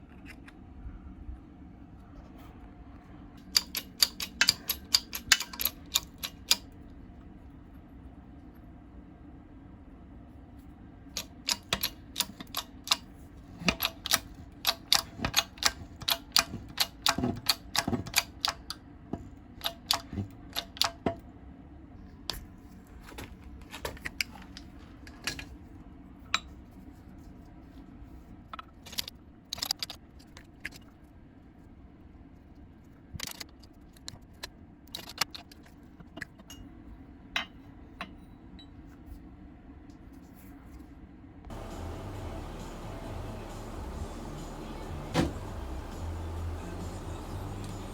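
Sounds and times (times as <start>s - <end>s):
steady low hum: 41.4s - 47.9s.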